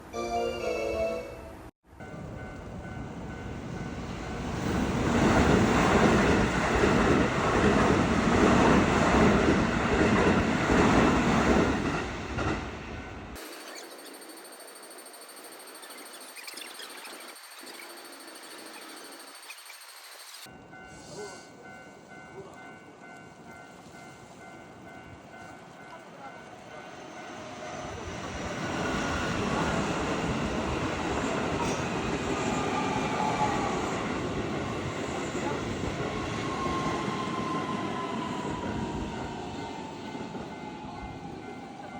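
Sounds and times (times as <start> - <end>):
electric train passing: 0.0 - 41.9
level-crossing warning bell: 0.1 - 4.7, 13.0 - 27.8, 32.5 - 41.9.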